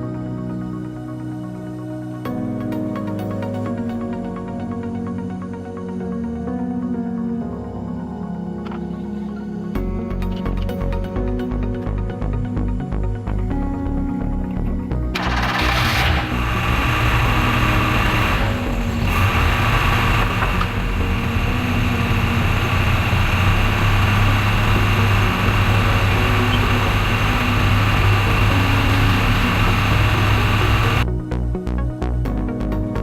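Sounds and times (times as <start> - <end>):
music: 0.0 - 33.0
car engine idling: 15.2 - 31.0.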